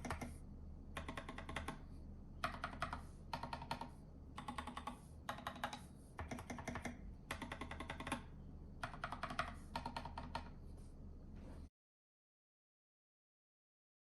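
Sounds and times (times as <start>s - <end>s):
mechanical keyboard typing: 0.0s - 0.4s, 1.0s - 1.8s, 2.4s - 10.6s.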